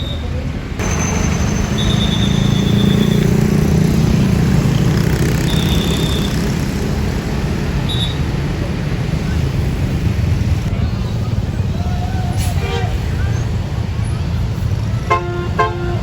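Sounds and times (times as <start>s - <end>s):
diesel bus engine rumbling: 0.0s - 16.0s
high whistle-like tones: 0.8s - 3.5s.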